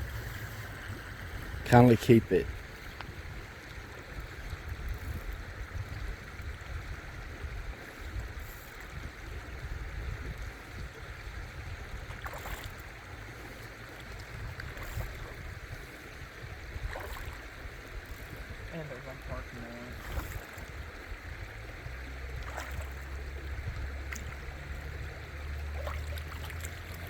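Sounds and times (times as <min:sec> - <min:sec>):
wind buffeting microphone: 0:00.0 - 0:13.2, 0:14.2 - 0:25.8
flowing river water: 0:00.0 - 0:27.0.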